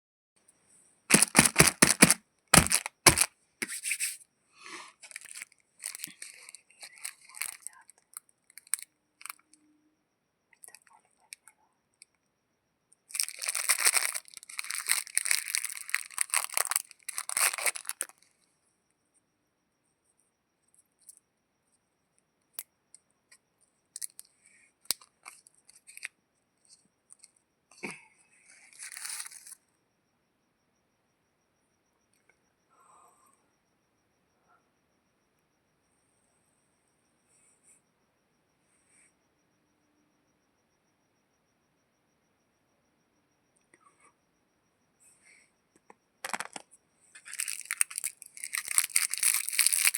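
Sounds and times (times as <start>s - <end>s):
plastic wrapper crinkling: 1.1s - 3.3s, 5.1s - 7.8s, 13.1s - 18.1s, 28.8s - 29.6s, 47.2s - 49.9s.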